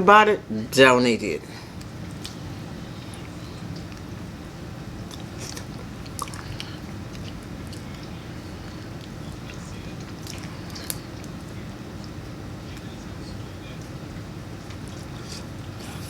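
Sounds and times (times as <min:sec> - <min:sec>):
person chewing and sucking: 0:05.0 - 0:11.4.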